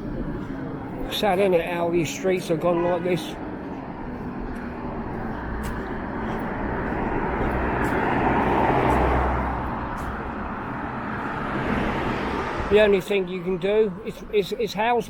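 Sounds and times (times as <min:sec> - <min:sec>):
vehicle passing by: 0:02.6 - 0:13.7.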